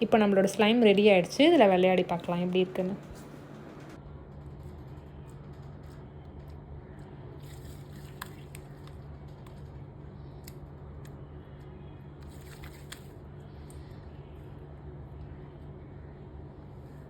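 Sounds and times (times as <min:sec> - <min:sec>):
steady low hum: 0:00.0 - 0:17.0
squishy slime clicks and crackles: 0:07.0 - 0:09.6.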